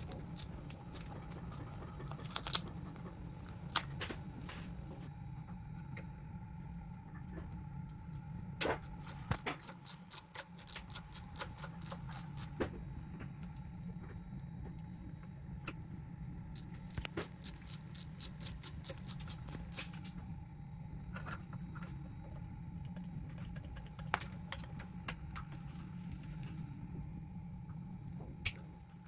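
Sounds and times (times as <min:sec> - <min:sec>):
steady low hum: 0:00.0 - 0:29.0
small hard parts clicking: 0:08.8 - 0:12.6, 0:16.6 - 0:20.1.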